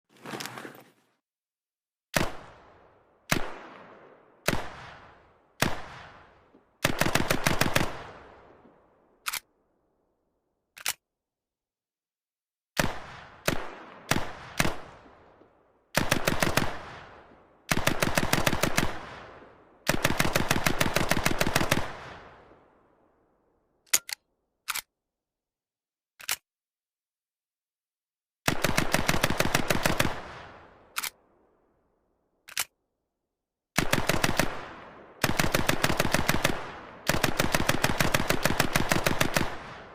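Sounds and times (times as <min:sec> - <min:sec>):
submachine gun firing: 0:06.8 - 0:08.3, 0:16.0 - 0:22.2, 0:28.5 - 0:31.2, 0:33.8 - 0:39.9.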